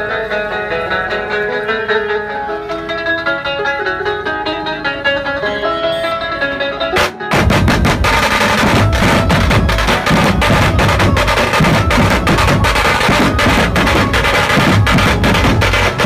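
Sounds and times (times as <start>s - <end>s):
band drums and percussion: 7.0s - 16.0s.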